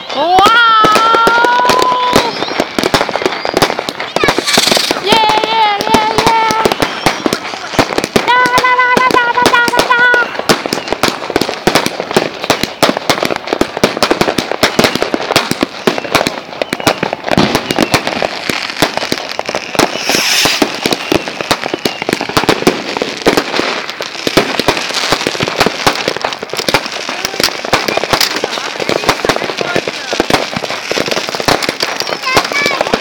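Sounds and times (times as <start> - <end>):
firecrackers and fireworks banging: 0.0 - 33.0
brief hiss: 4.4 - 5.0, 20.0 - 20.6.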